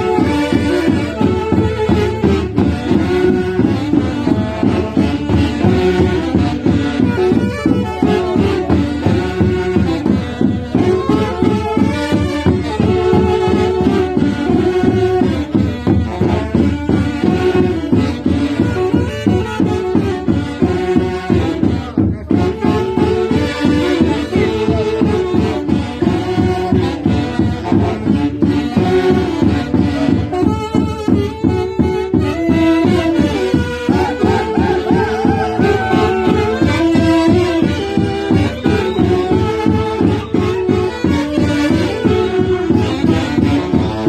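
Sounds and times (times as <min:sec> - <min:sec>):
folk band playing lively tune: 0:00.0 - 0:44.0.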